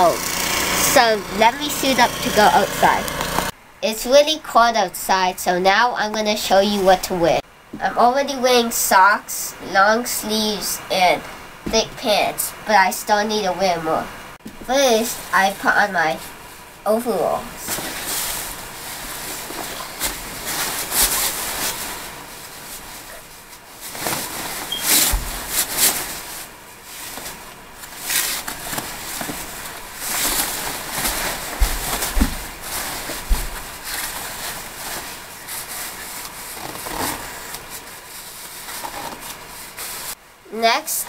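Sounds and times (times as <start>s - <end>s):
snow overalls rustling: 0.0s - 3.5s, 14.7s - 40.2s
dull thumps: 31.0s - 33.8s.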